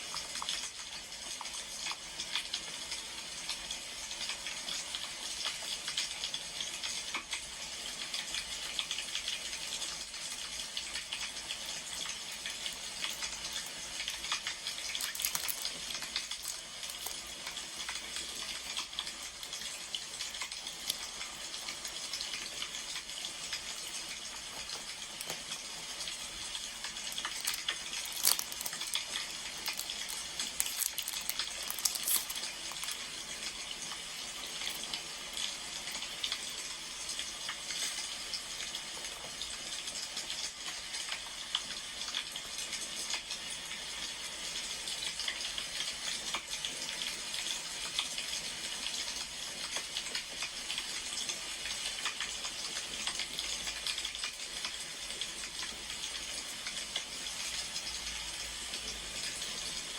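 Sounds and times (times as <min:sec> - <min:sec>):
wood fire crackling: 0:12.3 - 0:36.4.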